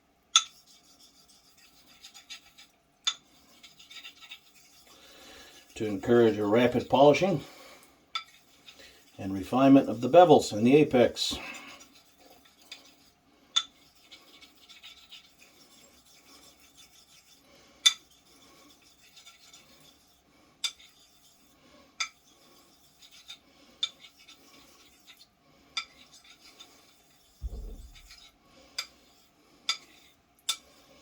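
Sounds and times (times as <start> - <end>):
razor blade scraping on wet stone: 0.4 - 7.3, 8.2 - 30.8
razor spine clicking on stone: 2.5 - 3.2
dull bump: 27.4 - 28.1.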